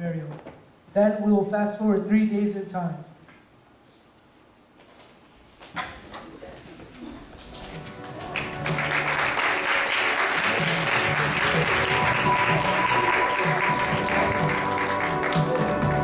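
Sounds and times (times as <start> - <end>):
audience applauding: 7.4 - 16.0
background music: 7.5 - 16.0.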